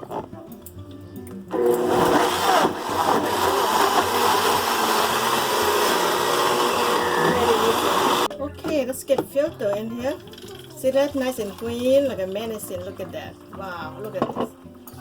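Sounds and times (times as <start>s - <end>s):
electric blender whirring: 1.5s - 8.3s.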